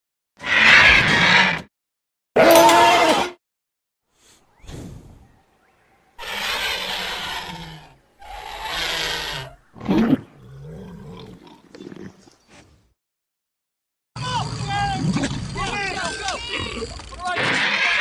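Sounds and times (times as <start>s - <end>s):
sharp creature cry: 0.4s - 1.6s, 2.4s - 3.4s, 6.2s - 9.6s, 16.4s - 18.0s
dinosaur roaring calls: 6.2s - 11.4s.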